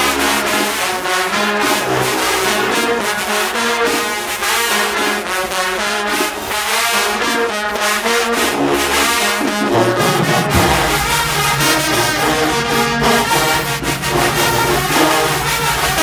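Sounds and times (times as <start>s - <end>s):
marching band brass chords: 0.0s - 16.0s
drum hits: 9.7s - 15.3s.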